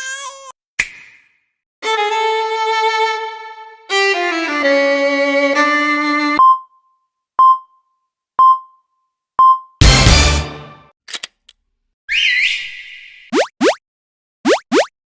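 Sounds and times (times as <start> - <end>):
short beeps: 6.4 - 9.8.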